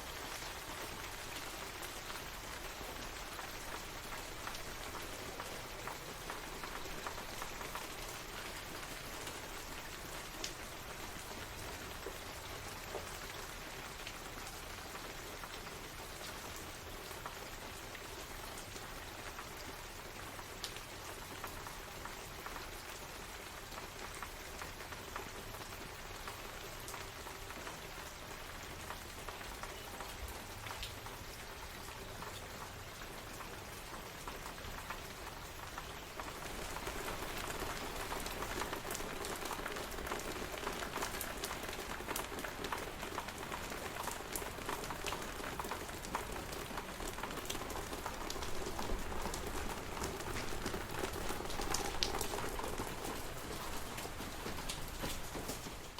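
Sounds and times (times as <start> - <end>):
steady rain falling: 0.0 - 55.9.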